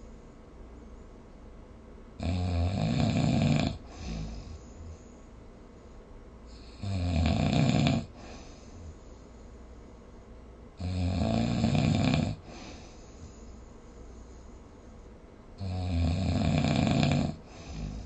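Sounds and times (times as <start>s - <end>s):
person snoring: 2.2s - 5.0s, 6.5s - 9.0s, 10.8s - 13.0s, 15.6s - 18.0s.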